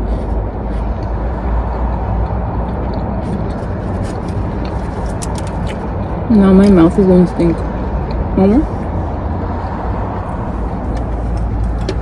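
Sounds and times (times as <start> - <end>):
chewing clicks: 1.0 - 6.0.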